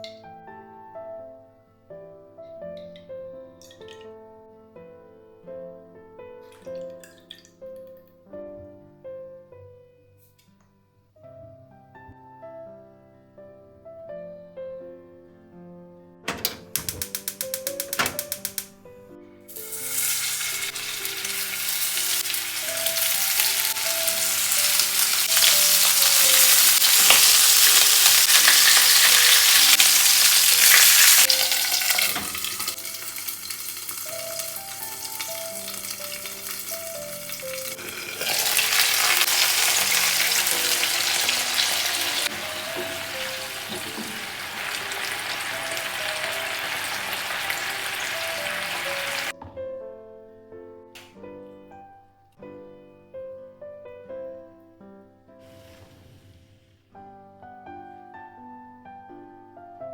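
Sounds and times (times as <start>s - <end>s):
peppers sizzling in a frying pan: 17.0s - 18.7s, 19.5s - 49.3s.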